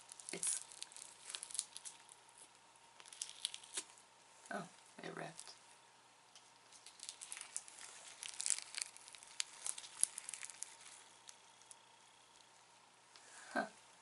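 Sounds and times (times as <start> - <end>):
slime crackling and popping by hand: 0.0 - 4.0, 6.3 - 12.6.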